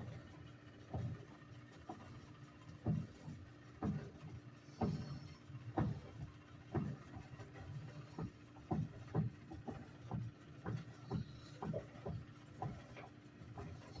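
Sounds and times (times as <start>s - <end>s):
washing machine humming: 0.0s - 14.0s
knocking grind: 2.8s - 14.0s.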